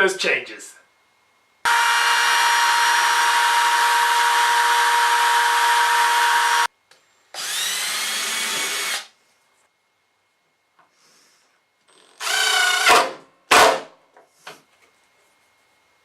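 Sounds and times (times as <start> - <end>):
power tool motor running: 1.7 - 6.7, 7.4 - 9.1, 11.9 - 13.1.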